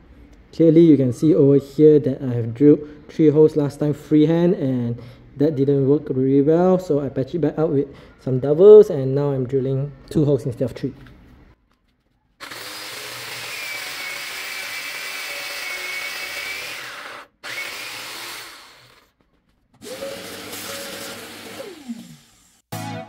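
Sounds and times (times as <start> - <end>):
power drill boring into wood: 12.4 - 19.1, 19.8 - 22.6.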